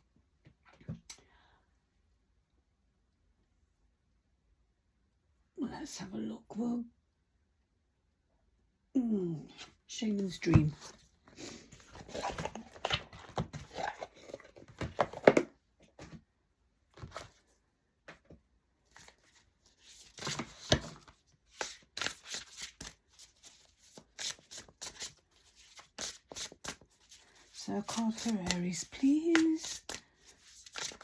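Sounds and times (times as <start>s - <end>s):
cards rustling and shuffling: 10.6s - 16.2s, 18.1s - 31.0s.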